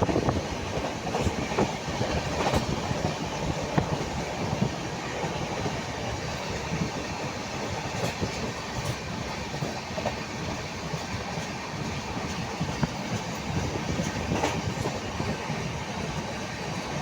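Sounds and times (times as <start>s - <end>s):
train rumbling on rails: 0.0s - 17.0s
wheels knocking and clattering: 6.8s - 15.6s.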